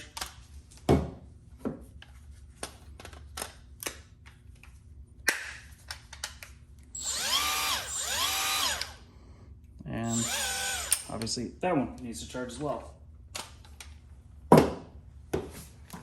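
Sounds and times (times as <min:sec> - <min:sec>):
power tool motor spinning: 0:07.0 - 0:09.0, 0:10.0 - 0:11.1.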